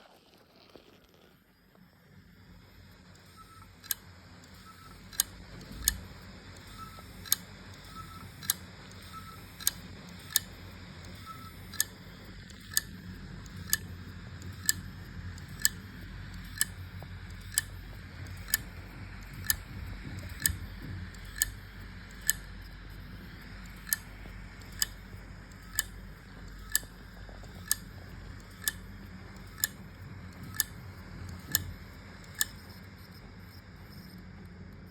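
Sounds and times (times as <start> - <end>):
low hum of spinning drive: 1.4 - 34.9
hard drive clicking: 2.9 - 34.9.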